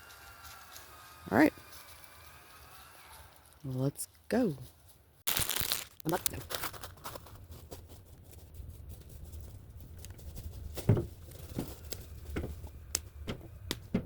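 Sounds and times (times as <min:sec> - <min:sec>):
heavy firewood thumps: 0:10.8 - 0:14.0.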